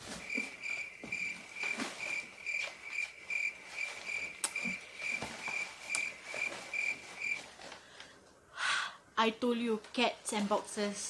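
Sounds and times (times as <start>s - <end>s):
cricket chirping: 0.0s - 7.5s.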